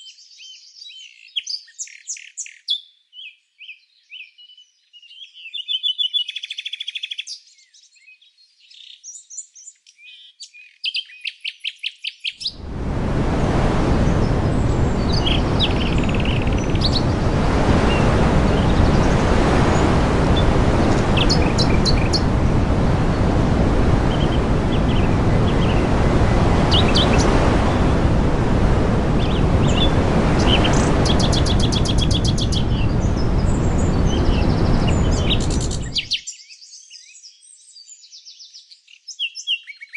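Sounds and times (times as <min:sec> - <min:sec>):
songbirds chirping: 0:00.0 - 0:39.9
loud steady rushing noise: 0:12.6 - 0:36.1.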